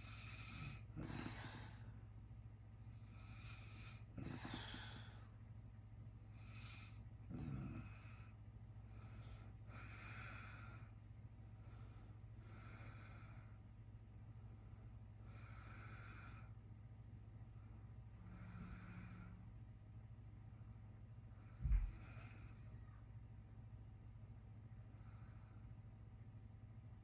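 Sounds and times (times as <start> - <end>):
man breathing heavily in sleep: 0.0 - 2.1, 2.7 - 5.4, 6.2 - 13.7, 14.4 - 16.6, 18.2 - 19.6, 21.2 - 22.9, 24.8 - 25.8
steady low hum: 0.0 - 27.0
short snorts: 3.0 - 5.2, 6.4 - 8.2.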